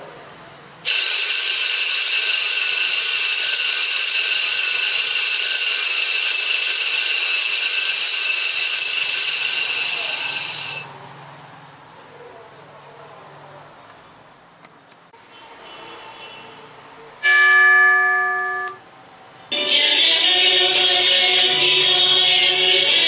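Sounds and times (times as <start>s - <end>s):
school bell ringing: 0.9s - 11.0s, 17.2s - 18.8s, 19.5s - 23.0s.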